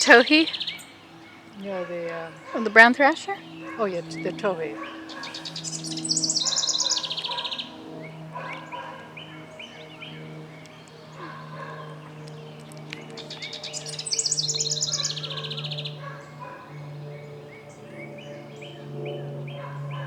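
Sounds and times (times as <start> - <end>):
songbirds singing and calling: 0.0 - 20.0
steady low hum: 0.0 - 20.0
bird rapid descending trill: 1.6 - 7.8, 13.2 - 16.0.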